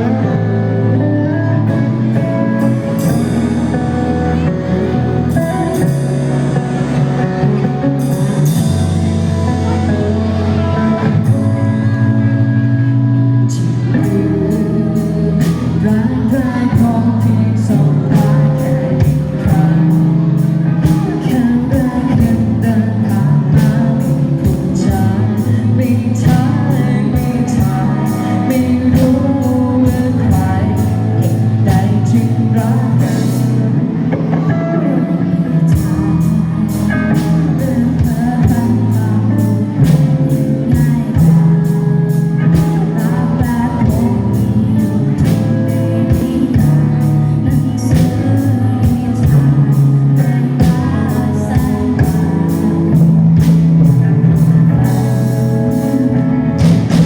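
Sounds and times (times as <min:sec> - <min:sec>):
person singing: 0:00.0 - 0:57.0
rock band playing: 0:00.0 - 0:57.0
steady drum beat: 0:35.7 - 0:57.0.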